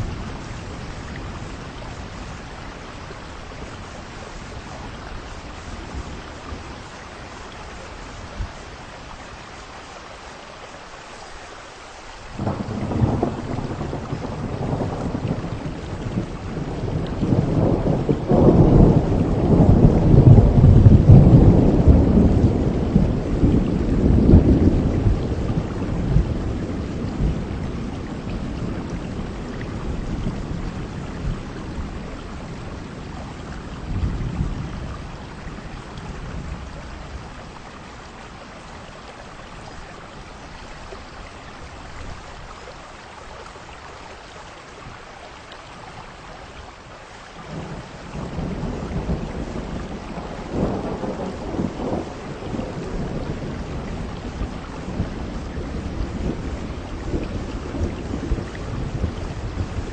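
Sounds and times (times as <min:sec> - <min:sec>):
heavy rain falling: 0:00.0 - 0:59.9
thunder rumbling: 0:12.4 - 0:40.6, 0:47.5 - 0:59.9.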